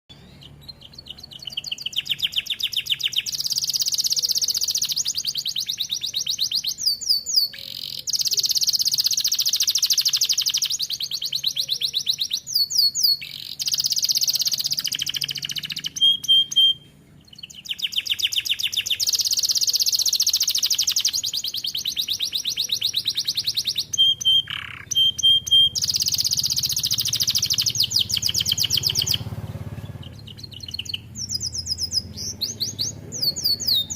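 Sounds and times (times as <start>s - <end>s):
canary singing trills: 0.1s - 33.9s.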